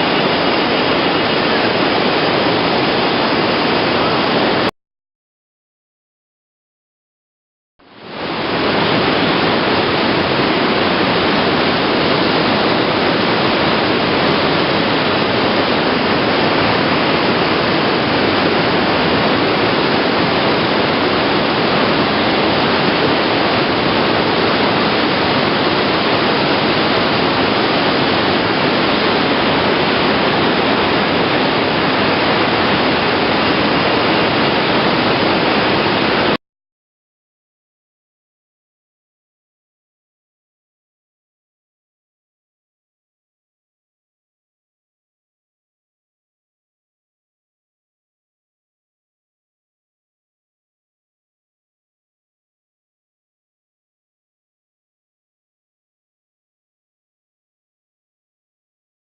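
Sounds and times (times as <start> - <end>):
waterfall rushing: 0.0 - 4.7, 7.9 - 36.4.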